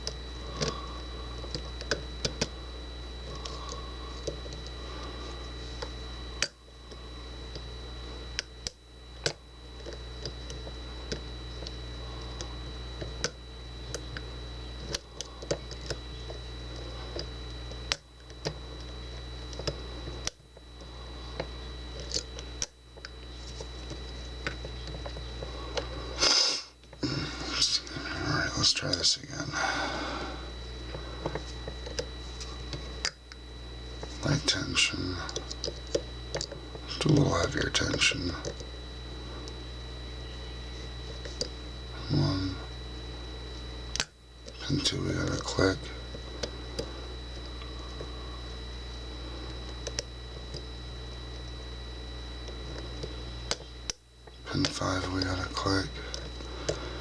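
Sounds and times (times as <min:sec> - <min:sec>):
electrical hum: 0:00.0 - 0:57.0.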